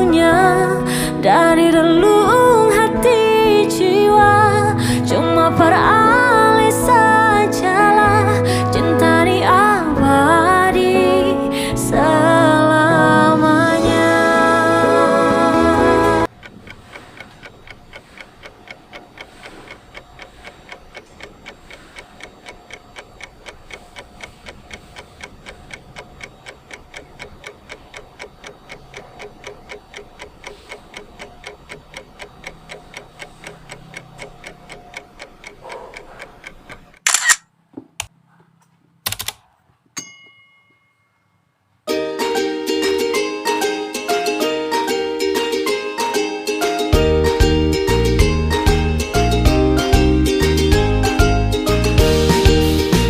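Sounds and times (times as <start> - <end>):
rapid ticking: 16.2 - 37.3
loud sharp clicks: 32.2 - 37.4, 39.0 - 39.5.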